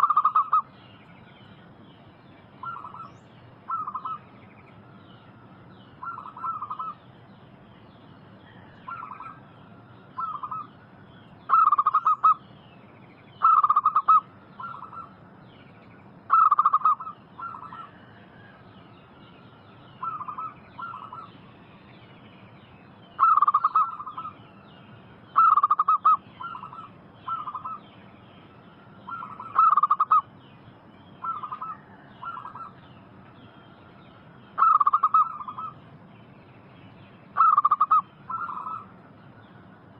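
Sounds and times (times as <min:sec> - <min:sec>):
doves cooing: 0:00.0 - 0:00.7, 0:02.6 - 0:03.1, 0:03.7 - 0:04.3, 0:06.0 - 0:07.0, 0:08.5 - 0:09.4, 0:10.2 - 0:10.7, 0:11.5 - 0:12.4, 0:13.4 - 0:15.1, 0:16.3 - 0:18.6, 0:20.0 - 0:21.3, 0:23.2 - 0:24.4, 0:25.4 - 0:27.8, 0:29.0 - 0:30.3, 0:31.2 - 0:32.8, 0:34.6 - 0:35.8, 0:37.4 - 0:39.0
small birds chirping faintly: 0:00.0 - 0:39.9.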